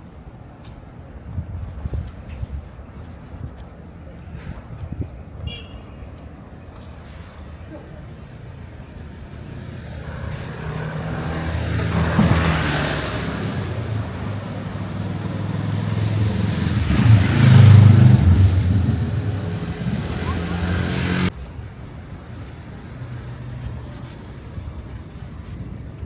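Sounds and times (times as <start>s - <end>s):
street noise: 0.0s - 26.0s
vehicle engine running: 10.0s - 21.3s.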